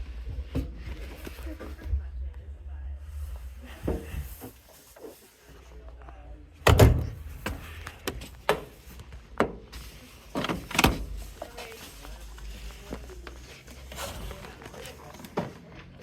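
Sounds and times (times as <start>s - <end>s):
washing machine knocks and thuds: 6.6s - 8.7s.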